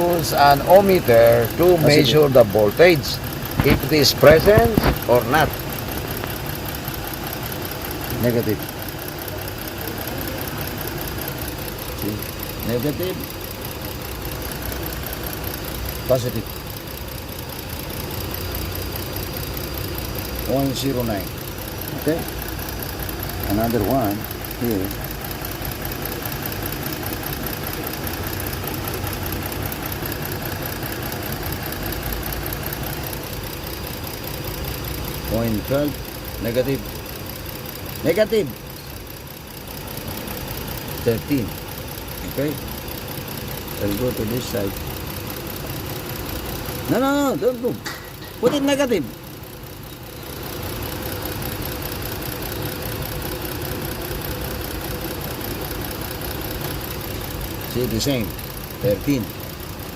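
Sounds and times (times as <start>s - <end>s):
car engine idling with misfire: 0.0s - 59.9s.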